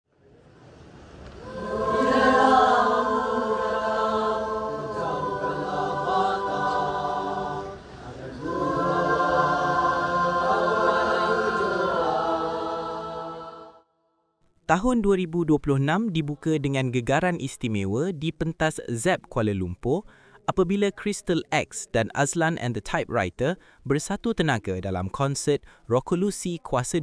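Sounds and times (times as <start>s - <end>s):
choir singing long chords: 1.4s - 13.9s.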